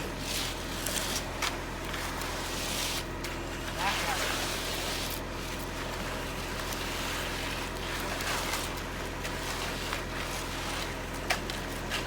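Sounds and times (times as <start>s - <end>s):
engine running steadily: 0.0s - 12.0s.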